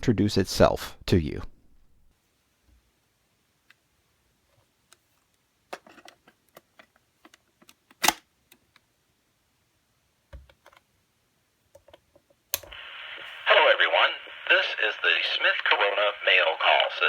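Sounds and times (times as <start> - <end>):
tape recorder controls clicking: 11.8 - 12.8.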